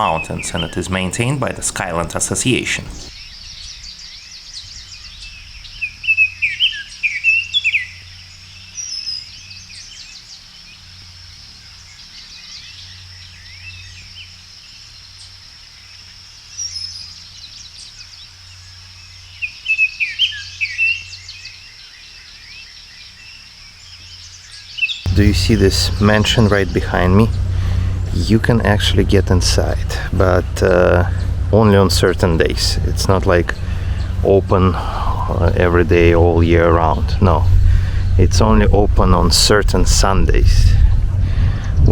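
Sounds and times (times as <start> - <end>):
steady high-pitched hum: 0.0 - 3.2, 25.1 - 41.9
songbirds chirping: 0.0 - 41.9.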